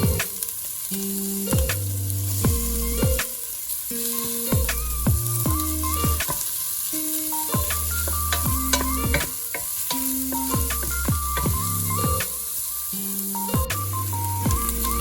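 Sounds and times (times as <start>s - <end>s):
food sizzling in a pan: 0.0s - 15.0s
utensil clinking and scraping pan: 7.6s - 12.2s.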